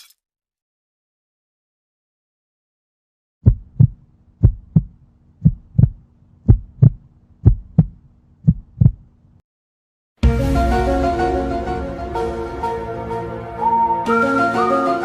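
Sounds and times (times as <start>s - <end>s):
heartbeat thumps: 3.4s - 9.1s
music: 10.2s - 15.0s.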